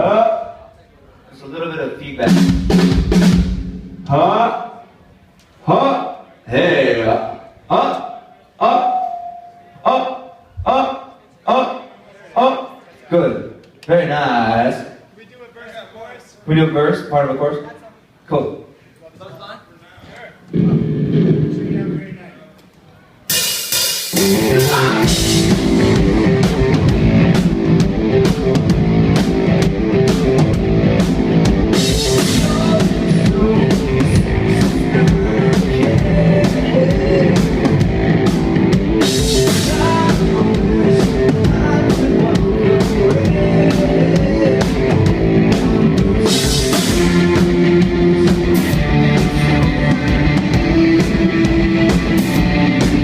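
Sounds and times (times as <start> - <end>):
rock band playing: 2.2 - 4.1, 23.3 - 53.0.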